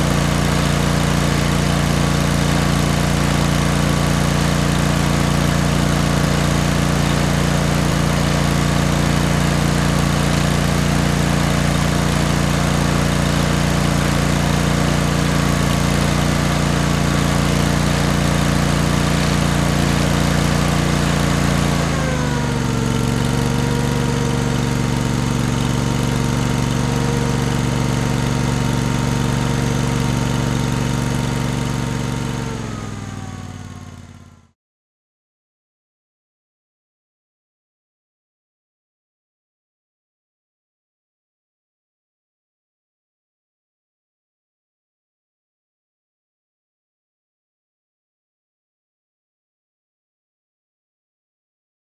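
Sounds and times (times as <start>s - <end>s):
lawn mower engine running: 0.0s - 34.5s.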